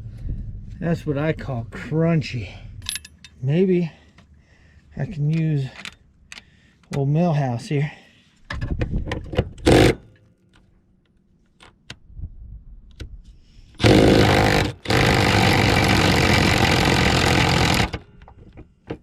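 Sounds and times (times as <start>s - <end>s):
impact wrench hammering on bolt: 9.6s - 10.1s, 13.8s - 18.3s.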